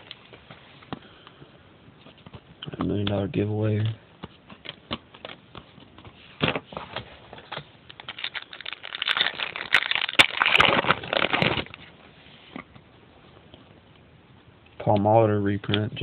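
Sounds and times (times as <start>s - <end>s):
foil wrapper tearing and crinkling: 7.9s - 11.8s.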